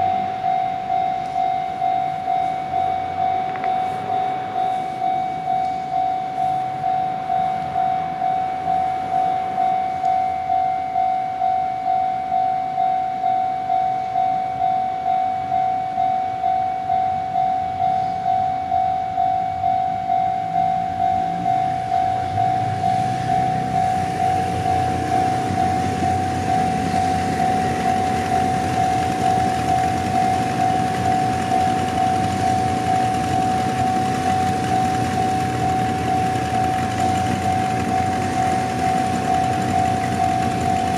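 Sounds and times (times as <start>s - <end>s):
level-crossing bell clanging: 0.0s - 40.9s
train rumbling: 17.1s - 40.9s.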